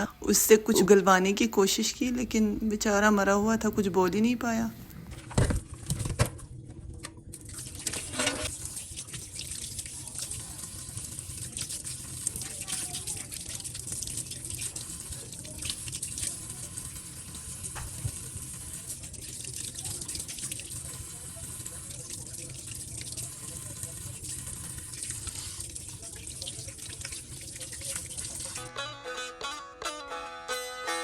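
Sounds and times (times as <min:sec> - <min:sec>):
tap water running into sink: 0:07.0 - 0:28.7.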